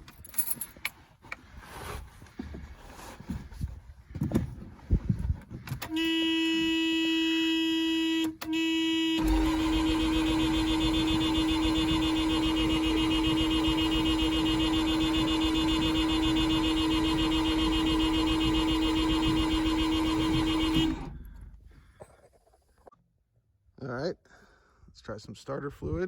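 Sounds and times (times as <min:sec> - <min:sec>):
car horn-like electric tone: 0:05.8 - 0:21.3.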